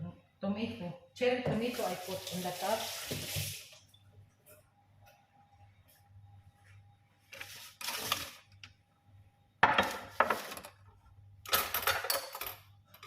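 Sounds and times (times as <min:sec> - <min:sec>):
dishes and utensils clattering: 0:11.5 - 0:13.0.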